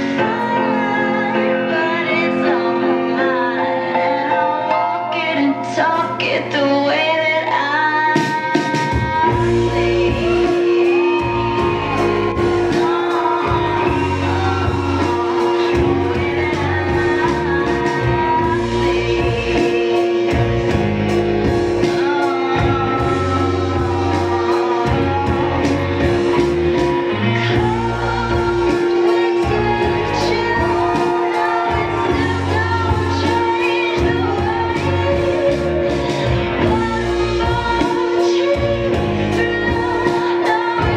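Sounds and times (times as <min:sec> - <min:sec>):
person singing: 0:00.0 - 0:40.9
bass beat: 0:08.7 - 0:40.9.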